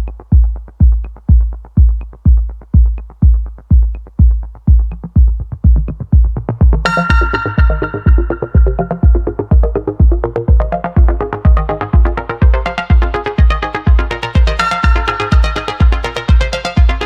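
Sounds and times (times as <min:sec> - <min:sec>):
electronic dance music: 0:00.0 - 0:17.0
heavy kick drum: 0:00.0 - 0:17.0
bright synth chords: 0:06.7 - 0:17.0.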